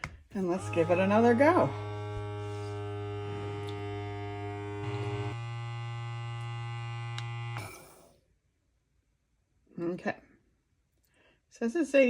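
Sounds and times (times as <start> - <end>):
vacuum sealer pump motor humming: 0.4 - 8.1.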